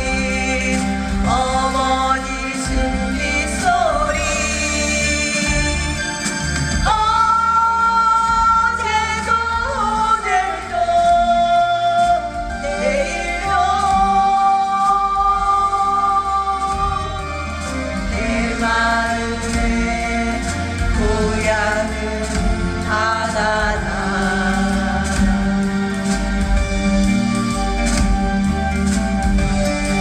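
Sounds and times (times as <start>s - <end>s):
musical accompaniment: 0.0s - 30.0s.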